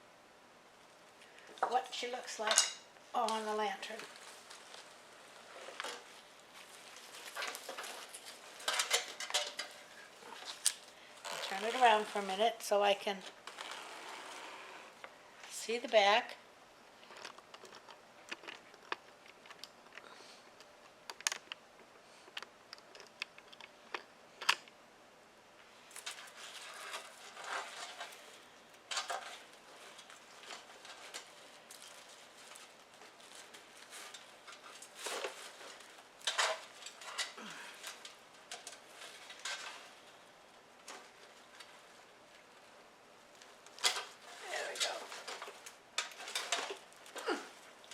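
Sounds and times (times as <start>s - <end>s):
ribbon rustling: 3.2s - 12.5s.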